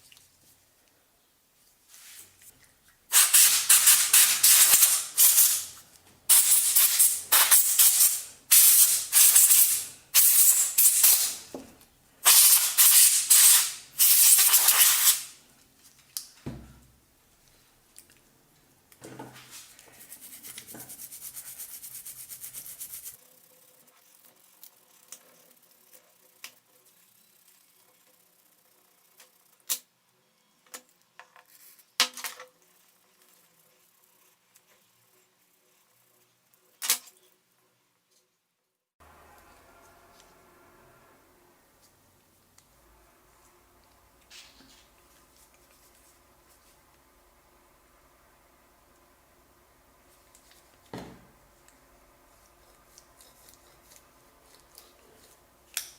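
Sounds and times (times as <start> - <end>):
soft steady hiss: 0.0 - 55.9
spray hissing: 3.1 - 5.7, 6.3 - 11.5, 12.2 - 15.3.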